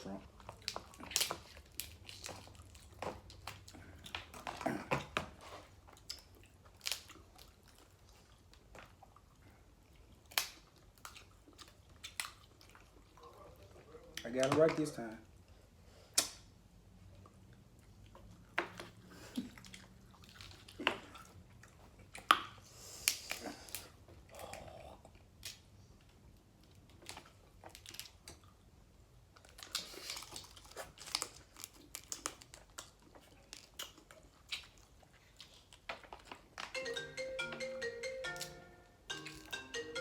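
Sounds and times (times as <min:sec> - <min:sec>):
chewing and biting: 0:00.2 - 0:14.6, 0:15.3 - 0:36.8
wrappers crinkling: 0:29.4 - 0:34.8.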